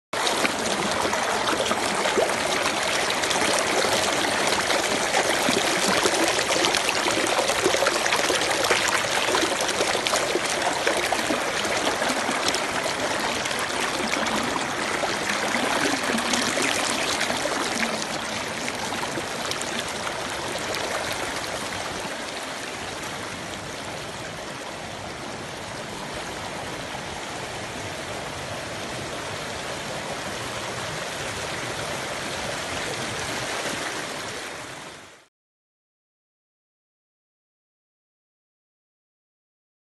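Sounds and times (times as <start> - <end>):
stream water rushing and babbling: 0.2 - 35.3.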